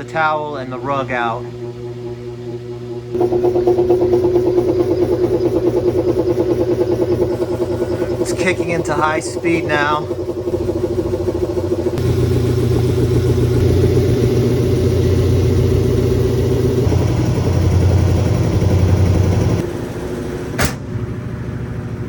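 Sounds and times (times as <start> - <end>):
washing machine spinning hum: 0.0 - 22.0
sharp click: 20.6 - 20.9.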